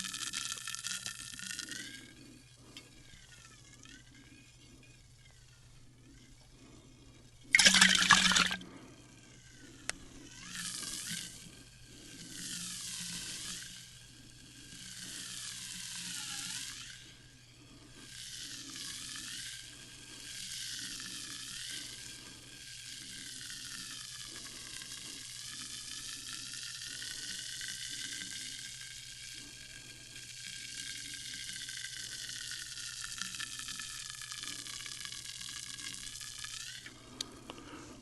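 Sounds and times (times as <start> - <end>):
sparkling water fizzing: 7.6 - 8.6.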